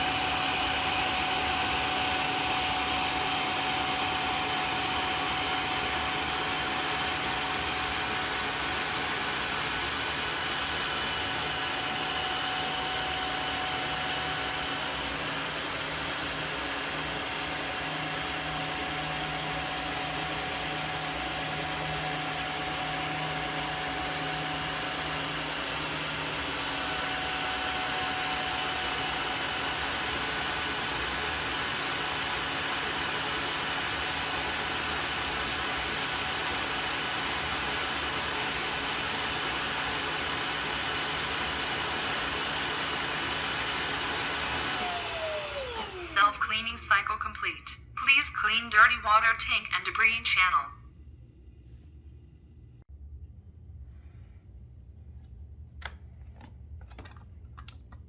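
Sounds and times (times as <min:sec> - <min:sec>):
wet-dry vacuum whirring: 0:00.0 - 0:47.1.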